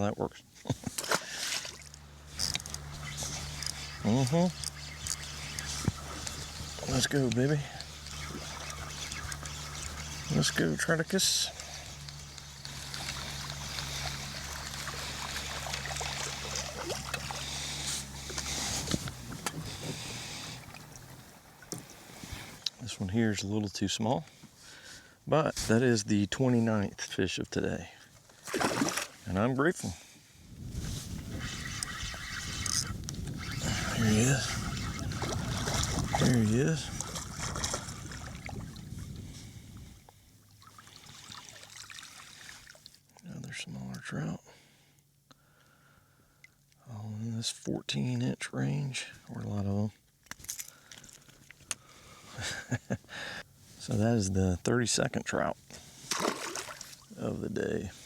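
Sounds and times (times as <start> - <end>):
low hum: 0.9 - 22.7, 30.4 - 41.0
fish splashing in water: 11.6 - 21.7, 28.4 - 29.2, 33.6 - 38.9, 40.6 - 43.0, 56.0 - 57.1.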